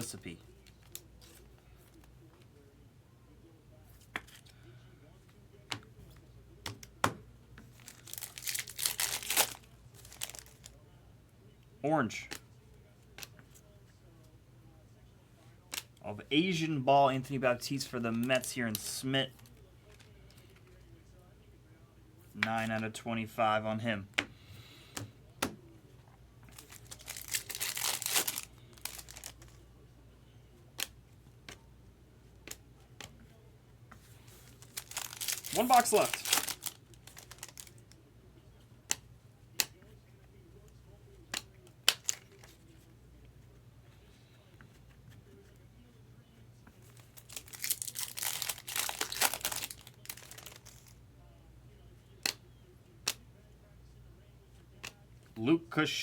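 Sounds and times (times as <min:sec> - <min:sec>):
foil wrapper crinkling and tearing: 0:07.8 - 0:10.7, 0:26.5 - 0:29.6, 0:34.3 - 0:38.0, 0:47.0 - 0:50.9.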